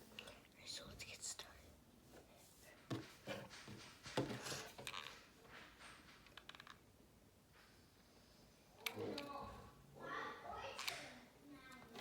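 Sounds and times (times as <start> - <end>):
soft knocks: 2.9 - 4.8.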